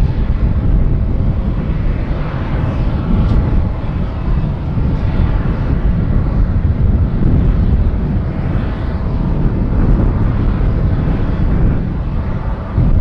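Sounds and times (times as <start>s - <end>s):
jet engines rumbling: 0.0s - 13.0s.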